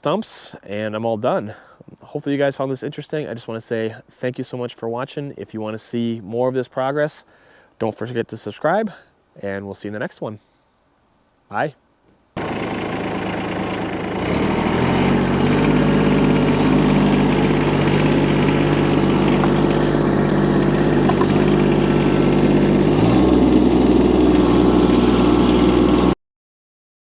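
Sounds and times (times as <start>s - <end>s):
mini excavator engine running: 12.4s - 26.2s.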